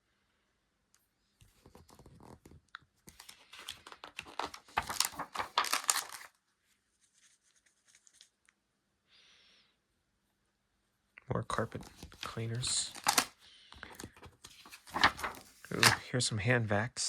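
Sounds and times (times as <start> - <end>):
book pages rustling: 1.4 - 8.4, 11.6 - 16.1.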